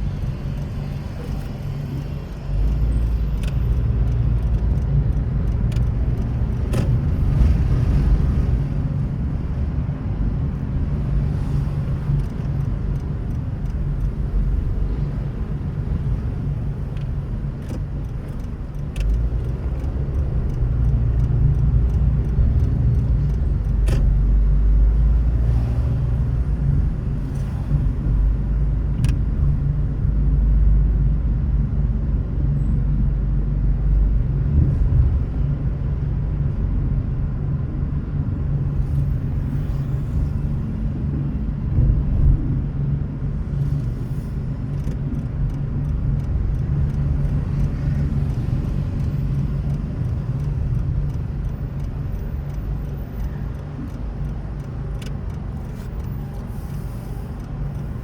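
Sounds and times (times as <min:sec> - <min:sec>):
car engine and tyre rumble: 0:00.0 - 0:58.0
faint clicks: 0:44.7 - 0:58.0.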